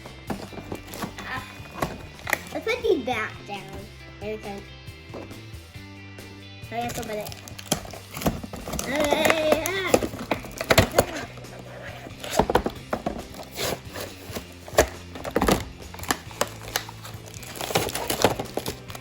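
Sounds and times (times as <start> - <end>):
background music with low drone: 0.0 - 19.0
plastic packaging crinkling: 6.9 - 19.0.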